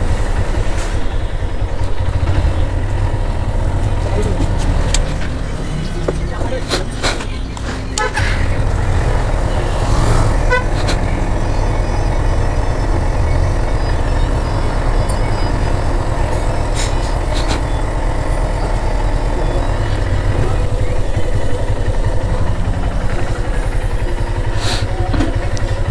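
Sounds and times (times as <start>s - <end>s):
motorcycle engine and road rumble: 0.0s - 25.9s
vehicle horn toot: 9.4s - 11.0s.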